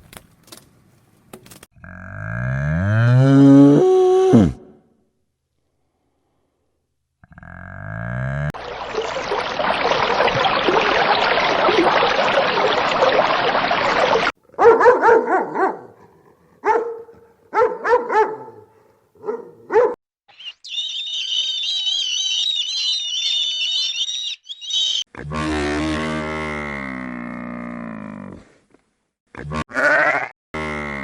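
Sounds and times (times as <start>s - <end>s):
dog barking: 14.5s - 20.0s
high warbling chirping call: 20.3s - 25.1s.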